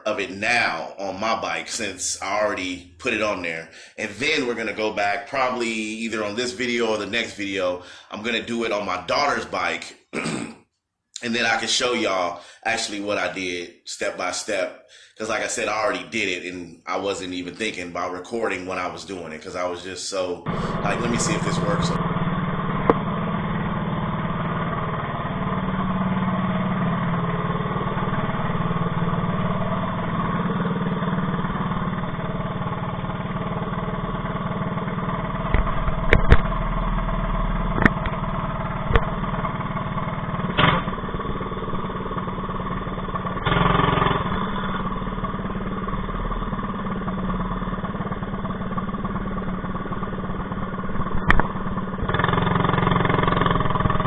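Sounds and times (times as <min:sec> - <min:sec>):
minibike engine running: 0:20.5 - 0:54.0
sharp clicks and knocks: 0:35.5 - 0:36.5, 0:37.7 - 0:38.2, 0:38.9 - 0:39.1, 0:40.5 - 0:41.4, 0:51.1 - 0:52.3.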